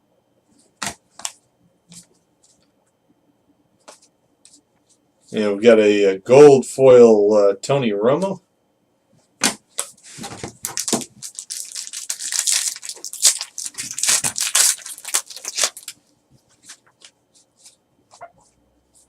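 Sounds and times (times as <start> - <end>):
wrapper tearing and crinkling: 10.5 - 16.0.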